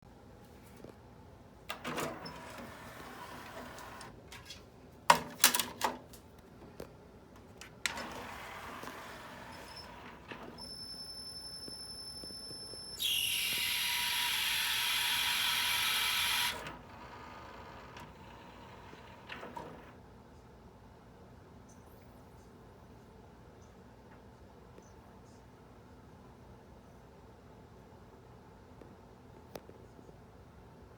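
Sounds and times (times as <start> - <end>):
mechanism clicks and clunks: 1.7 - 6.3, 7.4 - 10.7, 13.0 - 20.0
cd changer motor whirring: 7.9 - 20.0
thin high whine: 8.7 - 16.8
loud harsh whirring: 12.8 - 18.2.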